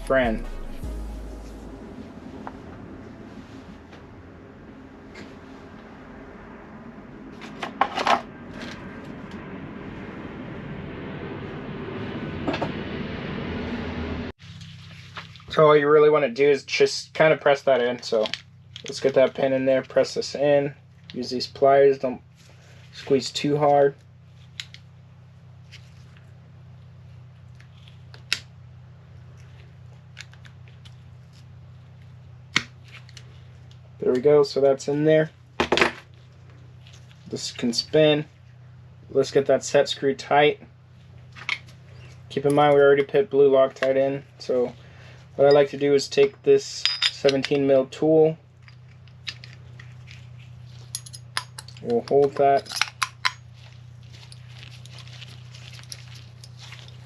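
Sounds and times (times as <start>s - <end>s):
low rumble: 0.0s - 47.6s
steady low hum: 0.0s - 57.0s
metal tools clinking: 46.8s - 47.6s, 50.7s - 53.5s.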